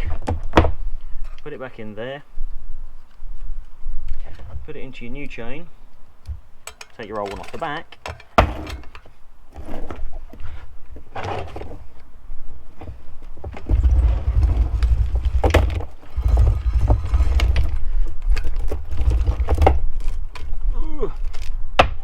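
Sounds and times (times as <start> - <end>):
low rumble: 13.5 - 19.8.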